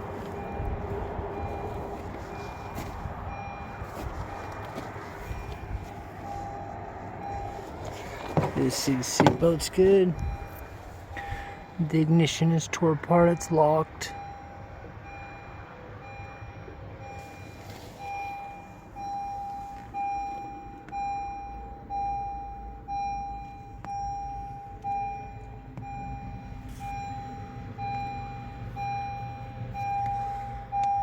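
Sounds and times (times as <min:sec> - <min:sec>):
car warning chime beeping: 0:00.0 - 0:31.0.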